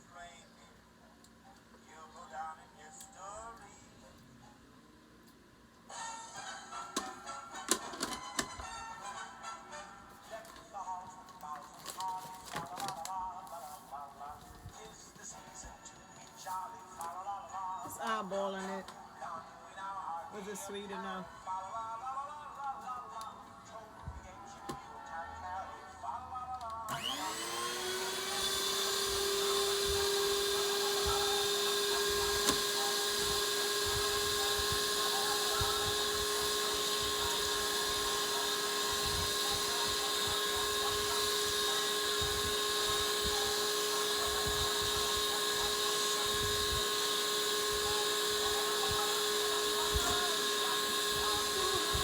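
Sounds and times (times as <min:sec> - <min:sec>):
electric mixer whine: 0:26.9 - 0:52.0.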